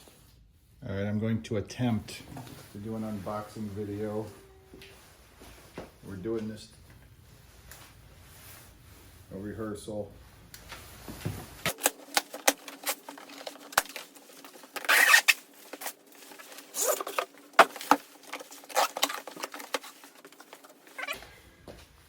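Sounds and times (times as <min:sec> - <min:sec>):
cardboard rustling and tearing: 0:11.6 - 0:21.2.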